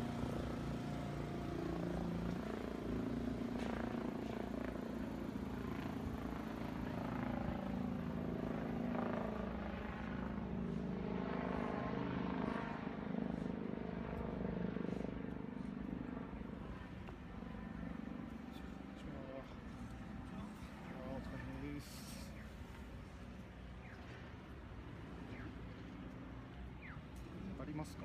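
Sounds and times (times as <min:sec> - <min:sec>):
engine drone: 0:00.0 - 0:09.5.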